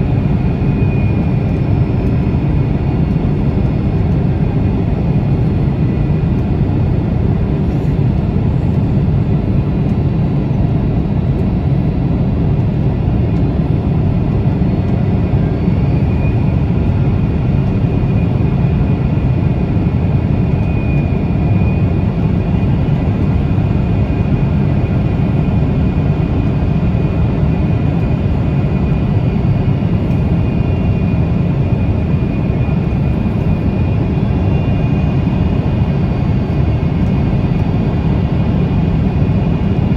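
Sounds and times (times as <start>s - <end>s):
jet engines rumbling: 0.0s - 39.9s.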